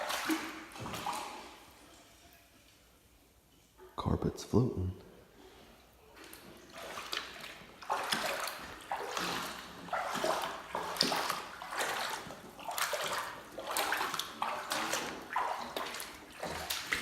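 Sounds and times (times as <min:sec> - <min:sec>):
boots wading through floodwater: 0:00.0 - 0:02.0, 0:06.2 - 0:17.0.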